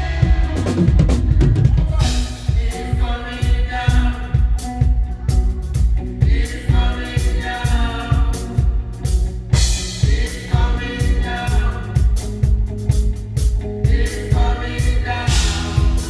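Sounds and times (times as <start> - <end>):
group singing: 0.0 - 16.0
live gospel band: 0.0 - 16.0.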